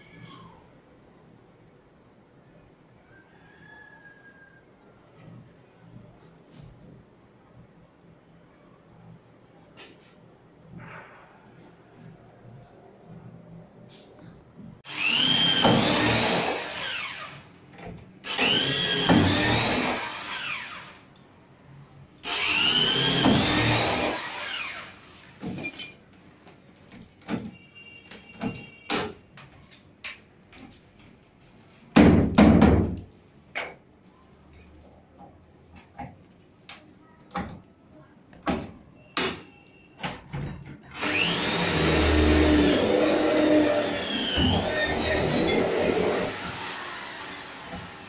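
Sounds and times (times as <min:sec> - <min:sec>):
small power tool running: 0:41.0 - 0:48.0.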